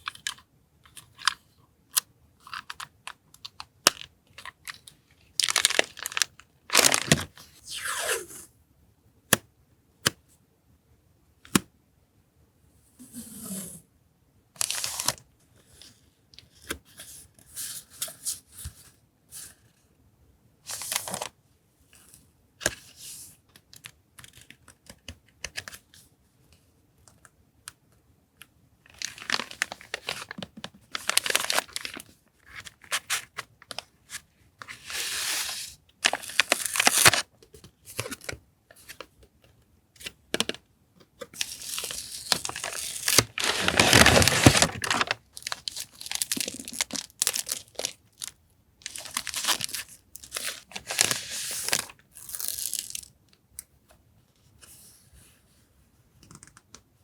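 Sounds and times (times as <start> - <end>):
paper packaging rustling: 5.4 - 7.4, 29.0 - 33.8, 34.7 - 37.3, 41.4 - 53.1.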